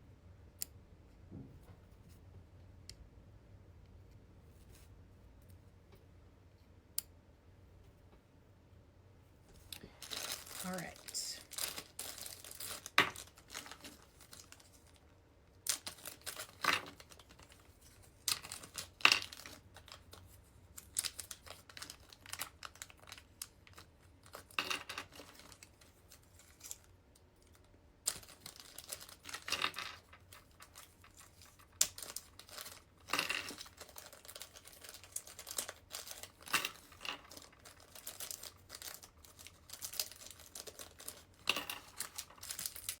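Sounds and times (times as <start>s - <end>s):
packaging crinkling and rustling: 9.6s - 43.0s.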